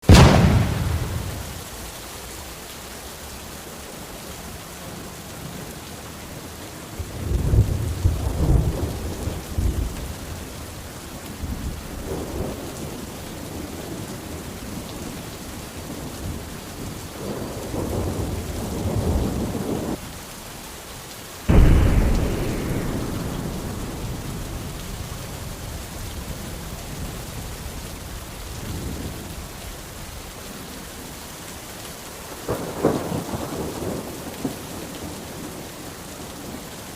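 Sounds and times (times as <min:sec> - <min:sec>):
loud thunderclap: 0:00.0 - 0:01.6, 0:21.5 - 0:27.2
rolling thunder: 0:00.0 - 0:01.7, 0:07.2 - 0:10.4, 0:21.5 - 0:29.3
steady rain: 0:00.0 - 0:36.9.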